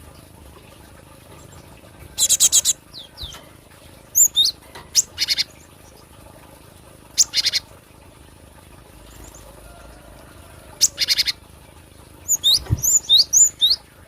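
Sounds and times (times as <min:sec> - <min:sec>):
bird calling rapid notes: 0:12.3 - 0:13.8.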